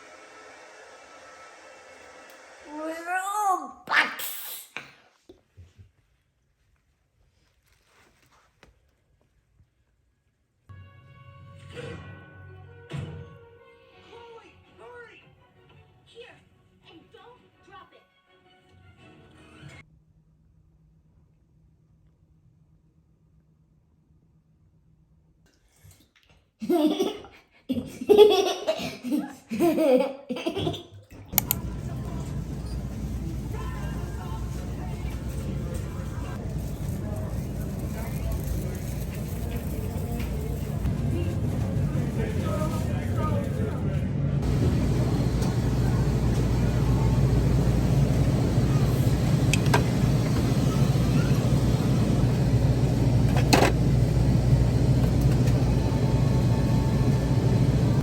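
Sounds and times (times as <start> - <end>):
child laughing: 26.6 - 30.9
low rumbling noise: 31.4 - 58.0.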